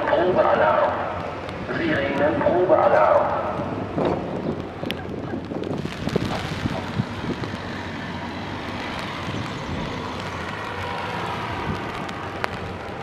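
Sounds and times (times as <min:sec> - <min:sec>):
wind noise on microphone: 0:00.0 - 0:13.0.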